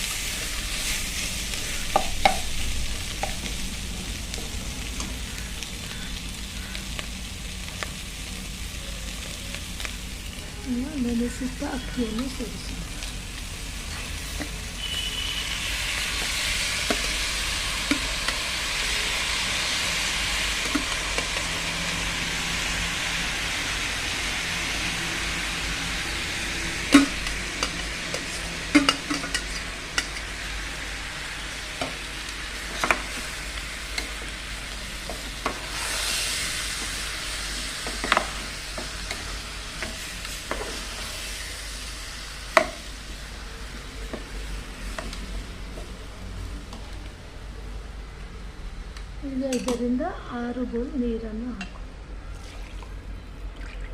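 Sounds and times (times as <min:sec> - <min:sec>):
rice sizzling in hot oil: 0:00.0 - 0:50.0.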